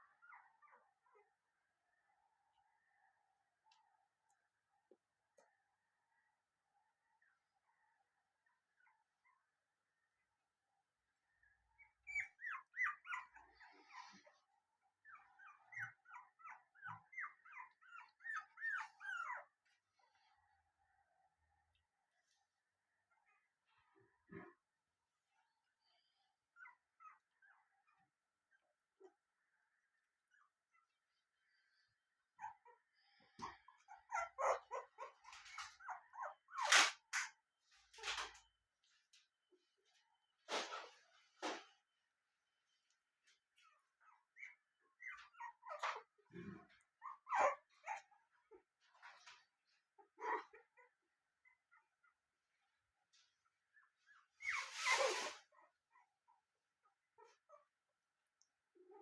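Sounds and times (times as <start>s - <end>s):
puppies whining: 0.0s - 1.4s, 11.3s - 19.8s, 32.3s - 36.9s, 43.5s - 52.1s, 53.8s - 56.4s
dog whimpering: 15.0s - 19.6s, 33.4s - 36.5s, 44.1s - 48.1s, 50.2s - 50.9s.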